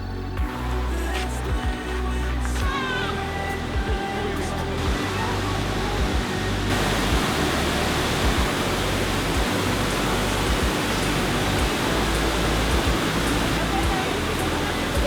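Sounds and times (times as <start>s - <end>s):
waterfall roaring: 4.8s - 15.0s.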